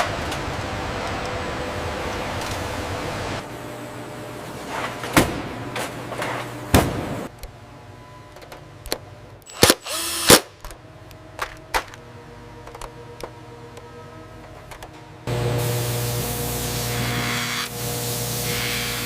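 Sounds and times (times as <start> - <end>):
machine hiss with low hum: 15.2 - 19.0.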